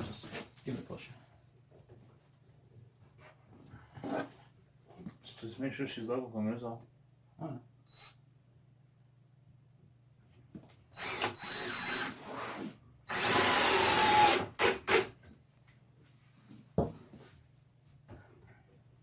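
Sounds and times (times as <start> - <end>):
power drill driving screws: 11.0 - 15.2.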